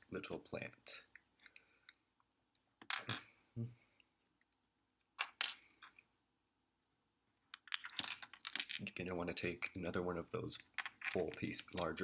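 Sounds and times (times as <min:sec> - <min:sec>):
plastic bricks clicking together: 0:07.5 - 0:08.9.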